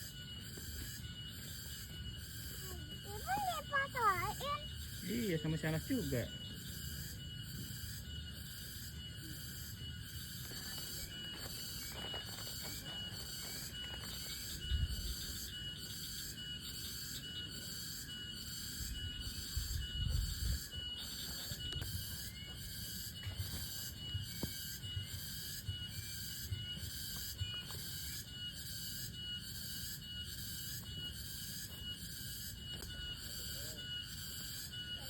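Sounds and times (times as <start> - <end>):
night insects shrilling: 0.0 - 35.0.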